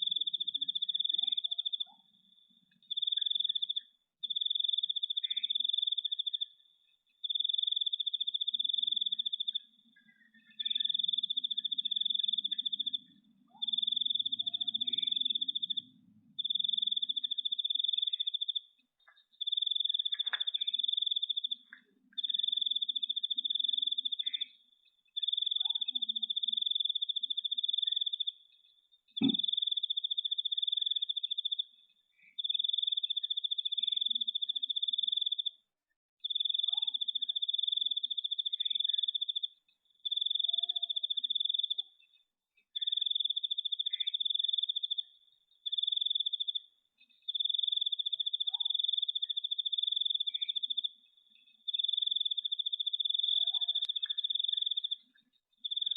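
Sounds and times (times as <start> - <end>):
cricket trilling: 0.0 - 2.1, 2.8 - 24.6, 25.2 - 35.6, 36.2 - 42.0, 42.7 - 55.9
sharp knock: 29.2 - 29.4.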